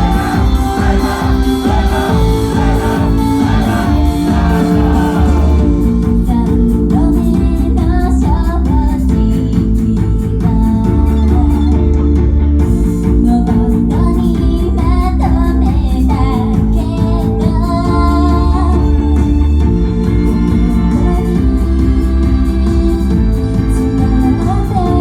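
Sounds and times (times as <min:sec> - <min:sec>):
steady drum beat: 0:00.0 - 0:08.0
person singing: 0:00.0 - 0:11.7
guitar: 0:00.0 - 0:25.0.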